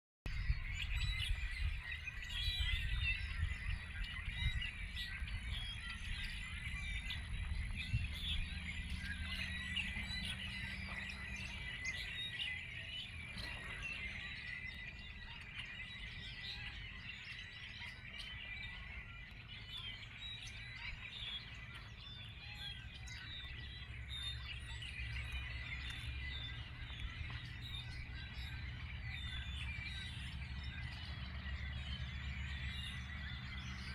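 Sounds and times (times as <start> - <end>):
low steady rumble: 0.3 - 11.8
birds chirping and singing: 0.3 - 33.9.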